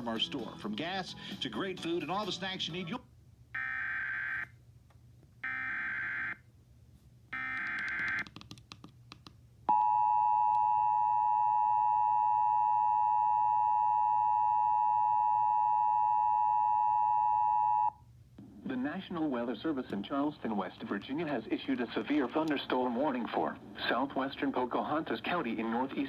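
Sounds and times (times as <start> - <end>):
clicks: 7.4 - 9.4.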